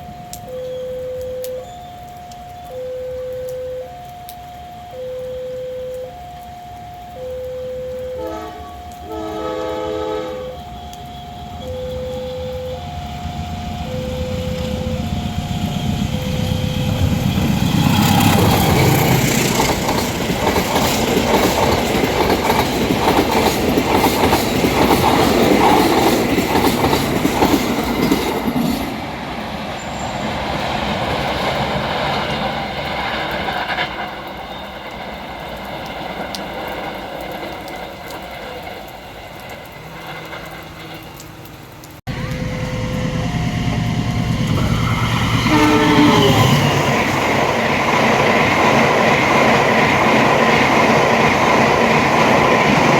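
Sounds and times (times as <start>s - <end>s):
train wheels clattering on rails: 10.9s - 41.4s, 42.1s - 52.9s.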